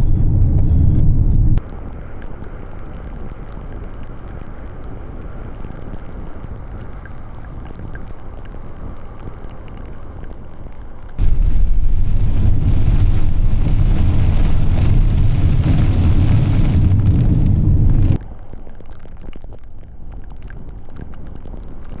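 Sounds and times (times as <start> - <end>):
wind rumbling on microphone: 0.0 - 22.0
faint ticks: 1.6 - 11.2
steady hiss: 11.2 - 16.5.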